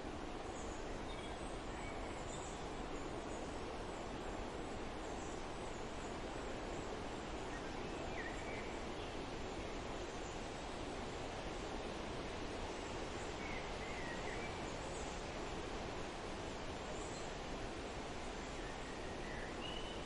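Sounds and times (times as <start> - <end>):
wind rushing through trees: 0.0 - 20.0
faint bird chirps: 18.6 - 20.0.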